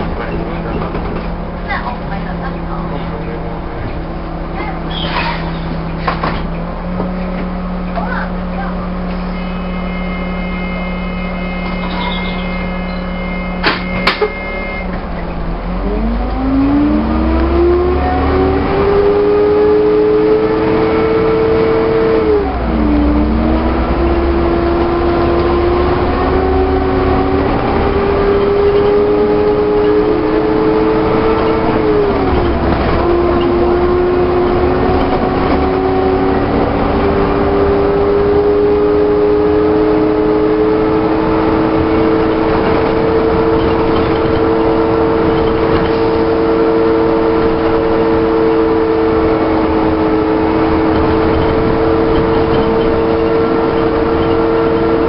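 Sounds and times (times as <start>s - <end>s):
clunks: 0.0s - 4.2s, 4.8s - 9.4s, 11.6s - 15.6s, 25.3s - 37.2s, 41.8s - 46.7s, 49.6s - 55.0s
diesel bus engine: 0.0s - 55.0s.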